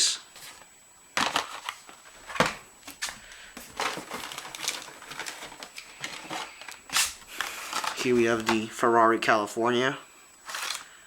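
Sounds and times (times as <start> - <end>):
plastic blister packs crinkling: 0.4 - 8.8, 10.4 - 11.0.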